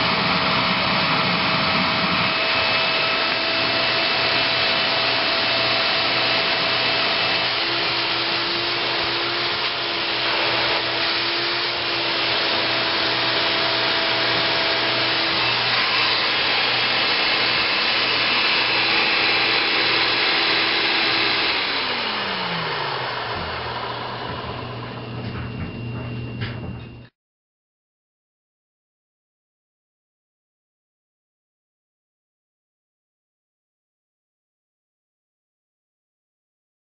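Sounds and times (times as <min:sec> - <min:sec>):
vacuum cleaner running: 0:00.0 - 0:27.1.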